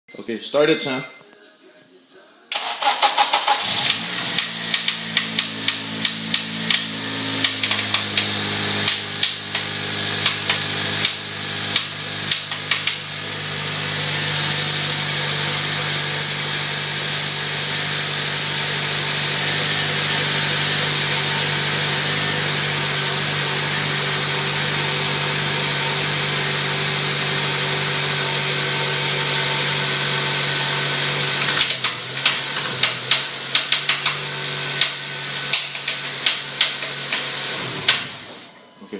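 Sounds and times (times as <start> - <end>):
car engine starting and running: 2.5 - 38.5
loud engine knocking: 4.0 - 21.8, 26.4 - 38.0.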